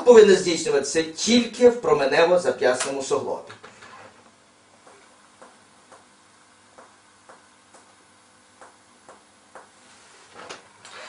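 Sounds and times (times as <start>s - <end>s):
finger tapping on chest: 4.8s - 6.1s, 6.7s - 8.0s, 8.6s - 9.8s.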